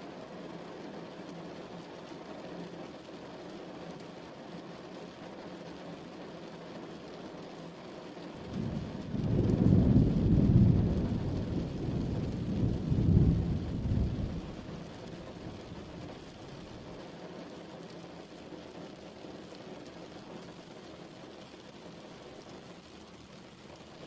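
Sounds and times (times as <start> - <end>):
steady rain: 0.0 - 24.0
thunder rolling: 8.4 - 16.7.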